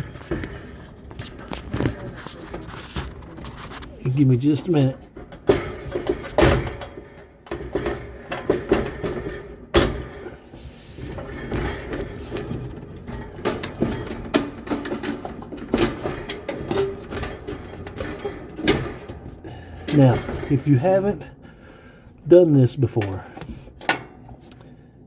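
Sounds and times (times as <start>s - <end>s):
metallic clinks and knocks: 0.0s - 10.4s, 11.0s - 20.9s.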